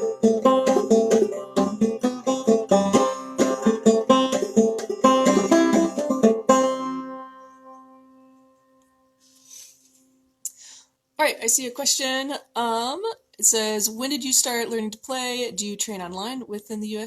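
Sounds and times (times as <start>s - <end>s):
banjo plucked notes: 0.0s - 9.3s.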